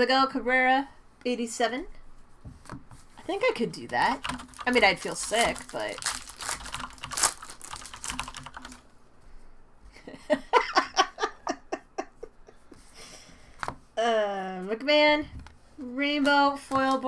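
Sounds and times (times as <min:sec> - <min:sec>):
laughter: 0:10.0 - 0:12.8.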